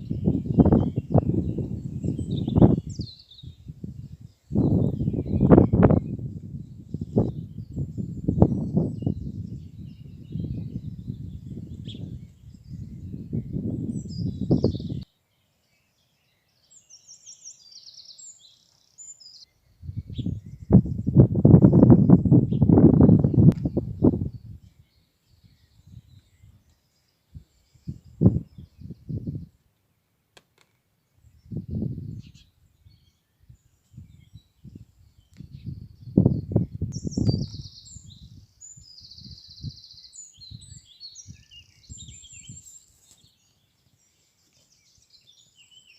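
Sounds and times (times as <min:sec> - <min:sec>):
wind buffeting microphone: 0:00.0 - 0:15.1, 0:19.6 - 0:26.7, 0:27.3 - 0:29.6, 0:31.2 - 0:42.8
faint bird chirps: 0:00.0 - 0:30.0, 0:30.6 - 0:45.9
songbirds singing trills: 0:00.0 - 0:45.9.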